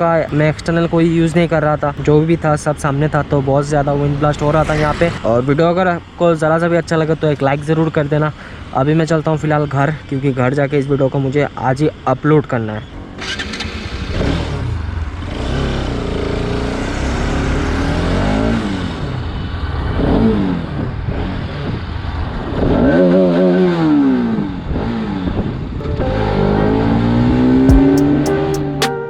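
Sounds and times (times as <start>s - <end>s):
motorcycle engine revving: 13.2s - 19.2s.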